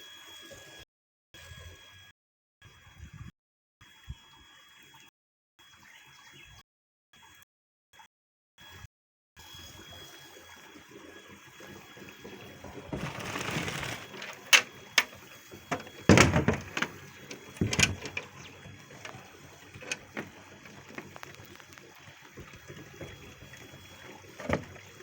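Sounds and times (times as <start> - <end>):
water splashing and pouring: 16.9 - 25.0.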